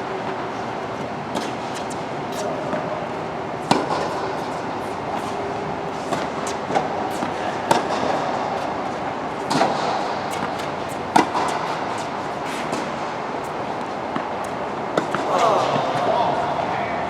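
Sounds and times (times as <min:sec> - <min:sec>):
steady background hiss: 0:00.0 - 0:17.0
ball being struck: 0:06.1 - 0:08.4, 0:09.5 - 0:11.8.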